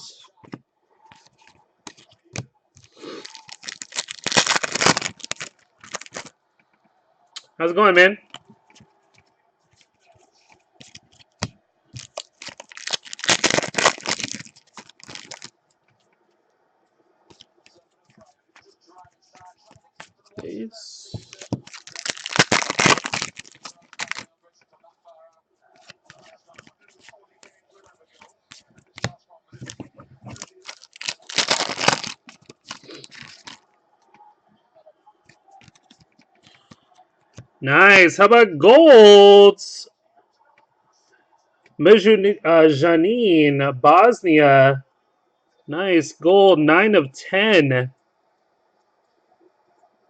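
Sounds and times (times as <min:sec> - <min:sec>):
plastic wrapper tearing and crinkling: 0:02.9 - 0:06.3, 0:12.0 - 0:15.5, 0:21.3 - 0:24.3, 0:28.5 - 0:33.6.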